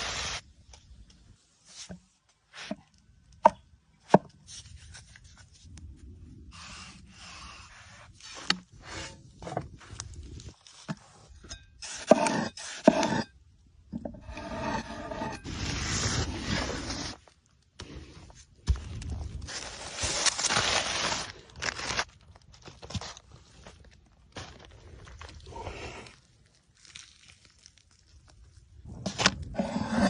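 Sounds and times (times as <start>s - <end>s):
food scraping and rubbing: 14.2s - 17.2s.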